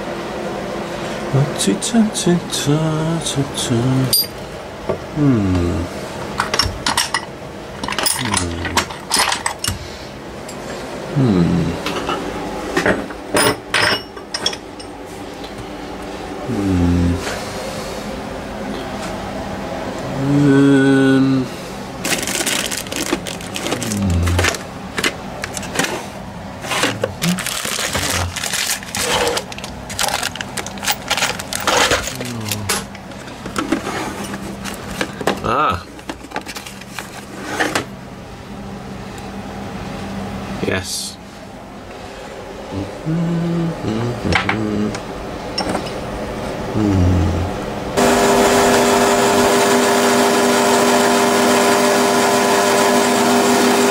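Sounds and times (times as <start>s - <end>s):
low machine hum: 0.0s - 53.9s
small metal pieces clinking: 27.2s - 32.9s
falling voice-like pitched sound: 42.7s - 45.0s.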